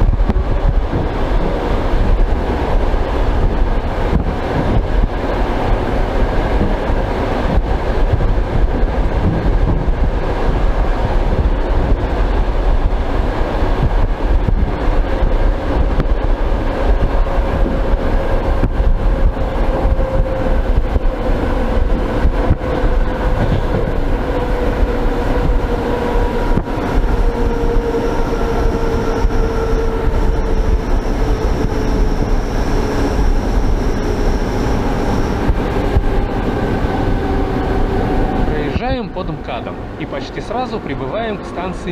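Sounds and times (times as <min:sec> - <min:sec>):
train motor whine: 0:00.0 - 0:41.8
rushing air: 0:00.0 - 0:41.9
train wheels rumbling on rails: 0:00.0 - 0:41.9
faint high whistle: 0:28.9 - 0:35.6.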